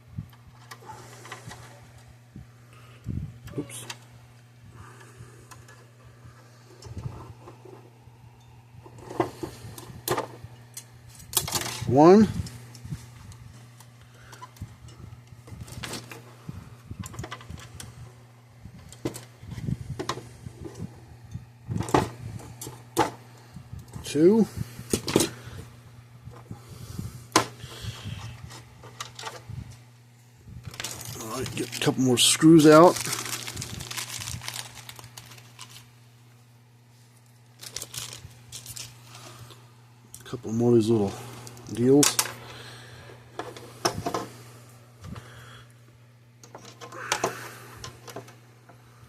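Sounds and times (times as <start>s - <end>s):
low electrical hum: 0.0s - 49.0s.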